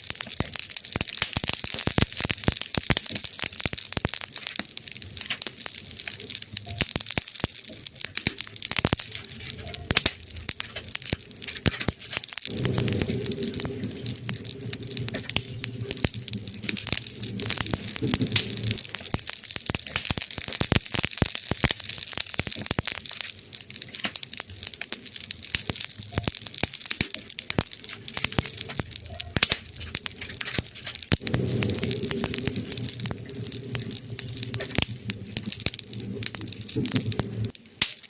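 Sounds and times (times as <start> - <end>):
campfire crackling and popping: 0.0 - 38.0
low rumble: 12.4 - 19.4, 27.6 - 37.6.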